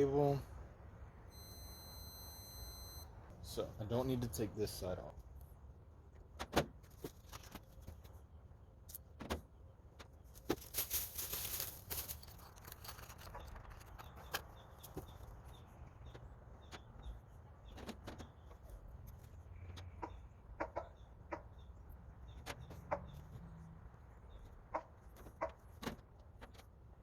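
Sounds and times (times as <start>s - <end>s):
handling clicks and metallic clatter: 10.3s - 15.3s.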